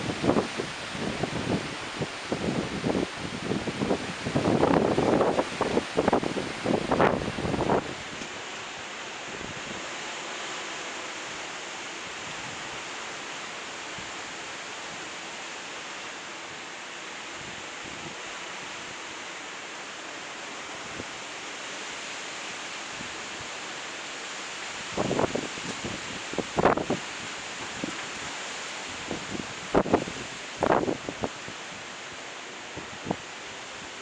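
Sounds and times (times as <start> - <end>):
wind gusts buffeting microphone: 0.0 - 8.3, 24.8 - 31.9
storm wind hissing: 0.0 - 34.0.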